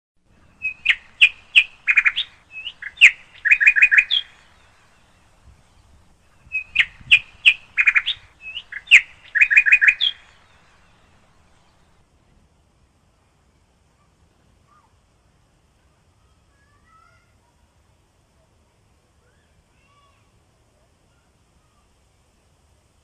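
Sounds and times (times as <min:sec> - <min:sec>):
songbird singing: 0:00.3 - 0:12.0.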